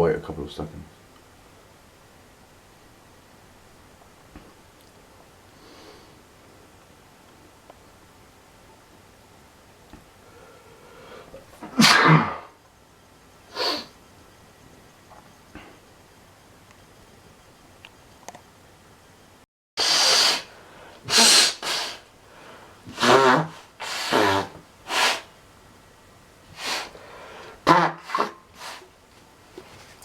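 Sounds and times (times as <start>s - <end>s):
person sneezing: 11.6s - 12.6s, 13.5s - 13.9s, 19.8s - 22.1s, 22.9s - 25.3s, 26.6s - 27.0s, 27.6s - 28.8s.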